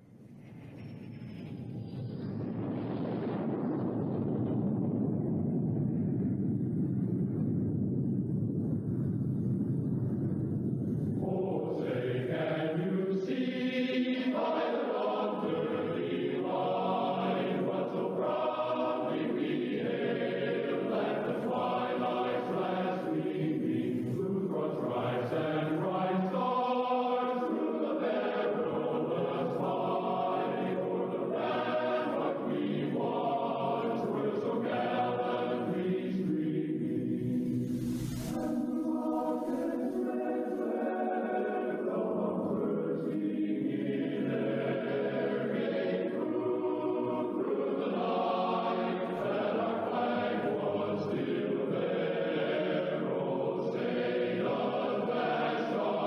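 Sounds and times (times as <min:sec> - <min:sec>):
low rumble: 0:00.0 - 0:13.0, 0:35.0 - 0:39.6
choir singing long chords: 0:10.8 - 0:56.0.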